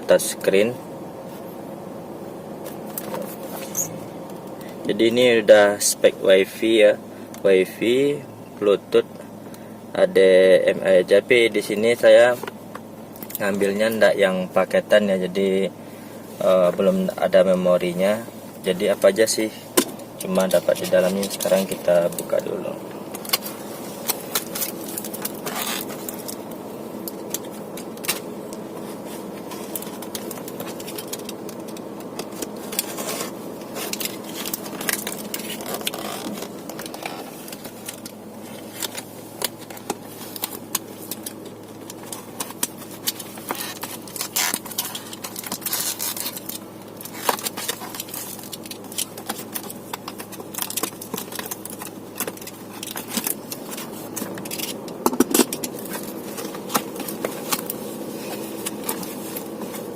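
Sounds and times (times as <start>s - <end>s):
deeper hum: 0.0s - 59.9s
steady low hum: 0.0s - 59.9s
cardboard and plastic crinkling: 16.4s - 59.9s.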